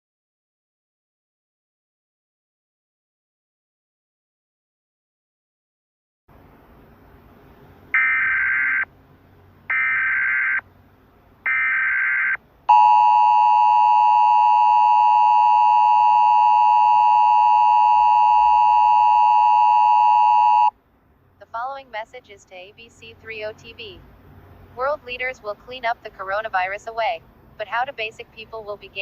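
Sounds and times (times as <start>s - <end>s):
two-tone attention signal: 12.7s - 20.7s.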